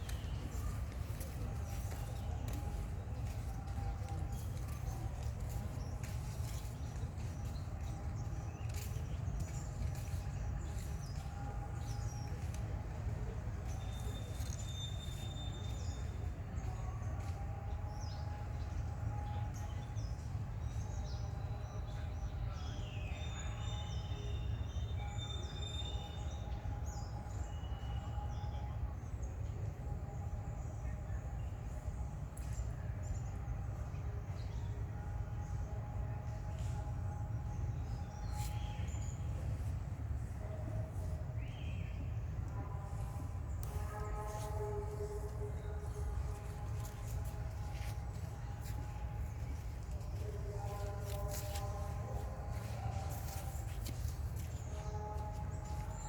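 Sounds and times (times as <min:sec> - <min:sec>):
steady low rumble: 0:39.0 - 0:56.0.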